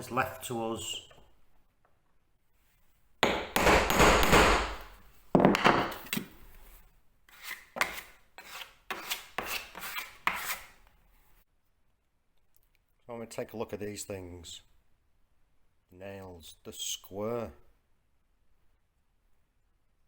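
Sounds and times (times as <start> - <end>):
tool scraping wood: 3.2 - 10.8.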